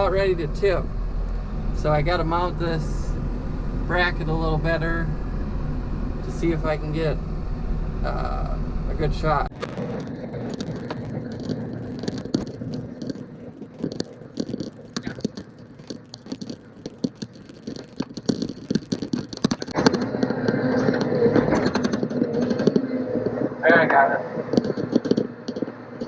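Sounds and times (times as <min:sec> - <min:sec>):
sharp clicks and scrapes: 0:09.5 - 0:23.4, 0:24.5 - 0:25.8.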